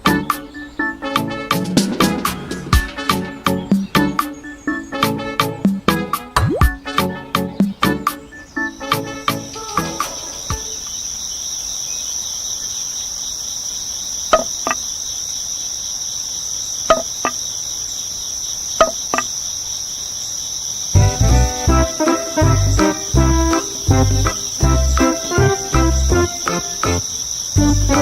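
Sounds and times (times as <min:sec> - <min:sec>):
music: 0:00.0 - 0:10.7, 0:21.0 - 0:28.0
crickets chirring: 0:07.9 - 0:28.0.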